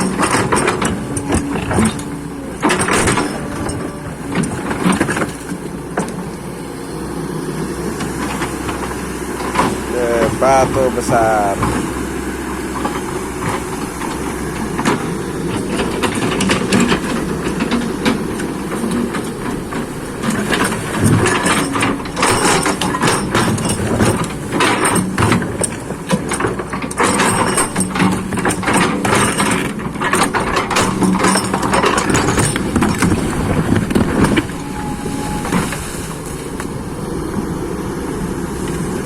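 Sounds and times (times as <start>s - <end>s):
sharp knocks and clatter: 0.0s - 6.4s, 12.7s - 36.7s
excavator diesel engine running: 0.0s - 39.0s.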